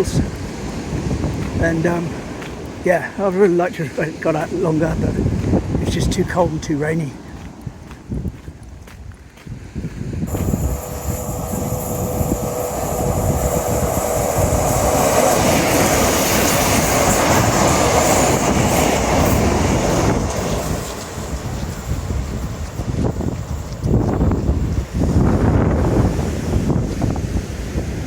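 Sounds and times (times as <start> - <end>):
passenger train passing: 0.0 - 7.2, 10.2 - 28.0
steady whine: 10.2 - 25.1.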